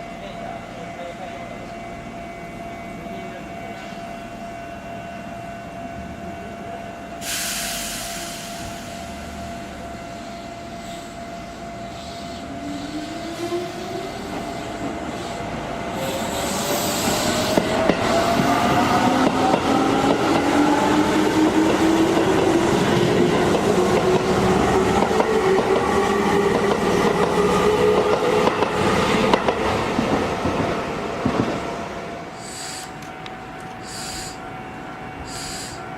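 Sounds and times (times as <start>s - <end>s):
burst of hiss: 7.2s - 9.2s, 32.4s - 33.0s, 33.8s - 34.4s, 35.3s - 35.8s
electric train motor whine: 7.8s - 29.0s, 32.2s - 35.9s.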